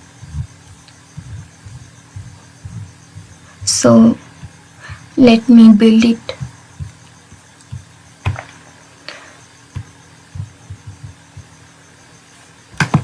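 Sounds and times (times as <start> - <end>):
faint electrical hum: 0.0 - 13.0
desk knocks: 8.2 - 8.6, 12.8 - 13.0.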